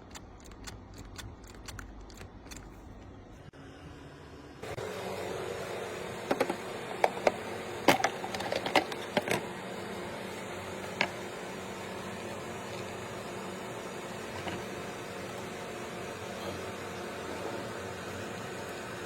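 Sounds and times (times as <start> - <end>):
sharp clicks and taps: 0.0 - 3.2
steady mechanical hum: 0.0 - 19.0.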